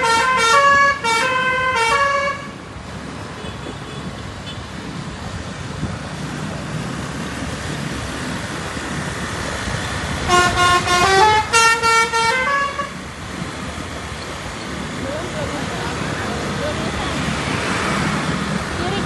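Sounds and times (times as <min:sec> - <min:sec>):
bus horn playing a tune: 0:00.0 - 0:02.6, 0:10.2 - 0:13.0
road and engine noise: 0:00.0 - 0:19.0.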